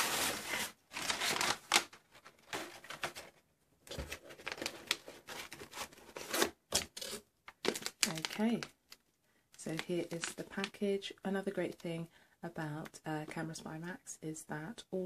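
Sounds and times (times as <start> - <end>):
paper package rustling: 0.0 - 9.0.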